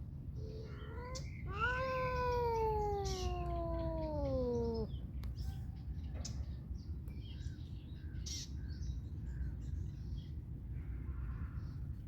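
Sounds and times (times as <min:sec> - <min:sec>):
cat meowing: 0:00.4 - 0:04.9.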